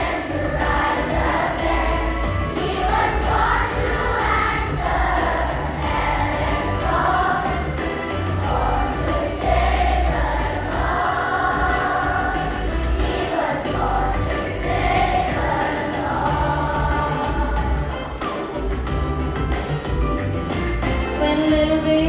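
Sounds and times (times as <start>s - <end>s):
group of voices singing: 0.0s - 18.8s
musical accompaniment with bass: 0.0s - 22.0s.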